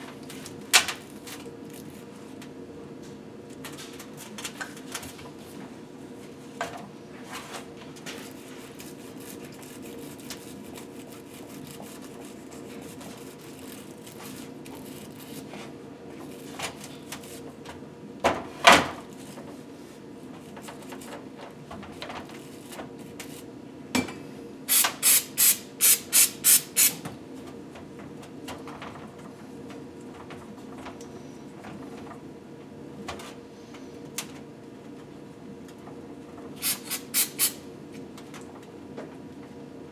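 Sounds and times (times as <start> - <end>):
low shop hum: 0.0 - 39.9
compressed air spray hissing: 24.7 - 27.0, 36.6 - 37.6.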